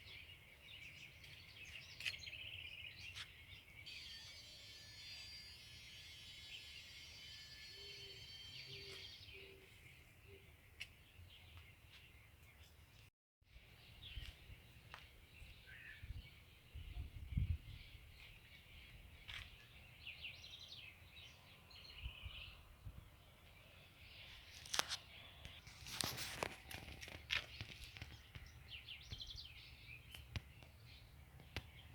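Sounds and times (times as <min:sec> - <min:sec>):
small birds chirping: 0:00.0 - 0:04.4, 0:07.7 - 0:13.0, 0:13.8 - 0:31.9.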